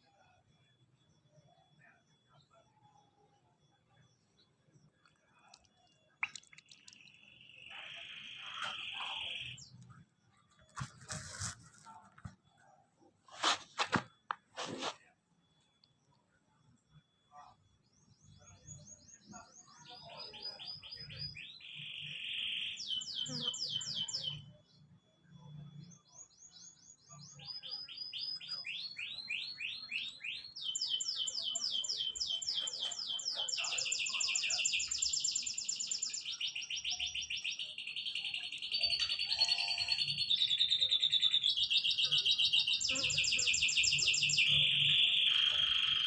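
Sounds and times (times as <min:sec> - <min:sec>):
songbird singing trills: 0:01.1 - 0:11.2, 0:15.8 - 0:46.0.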